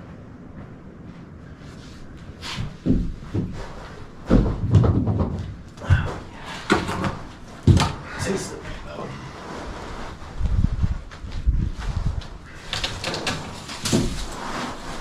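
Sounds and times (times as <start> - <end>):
rustling: 0.1 - 15.0
thumps and knocks: 2.7 - 8.0.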